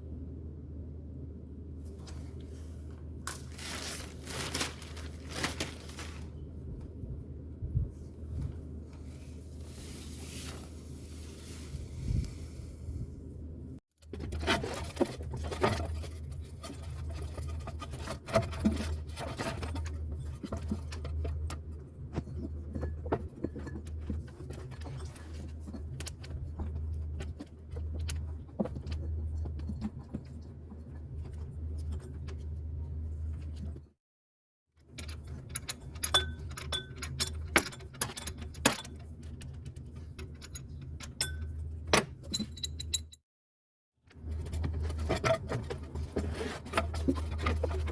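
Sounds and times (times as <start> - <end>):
steady low hum: 0.0 - 13.8.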